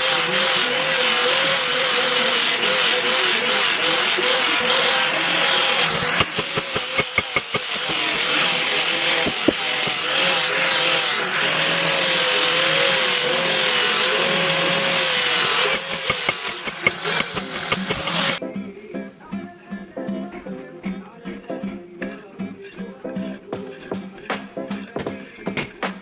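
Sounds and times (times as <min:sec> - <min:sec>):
electric power tool running: 0:00.0 - 0:18.4.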